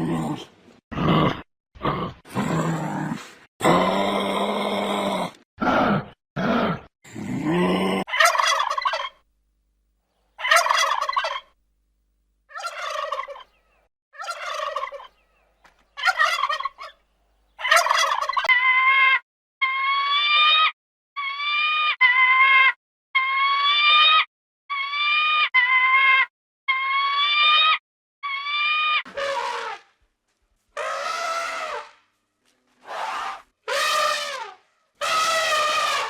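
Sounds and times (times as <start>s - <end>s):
low-pitched animal grunting calls: 0.0s - 8.1s
higher-pitched animal calls: 17.6s - 29.9s, 30.8s - 32.0s, 32.8s - 36.0s.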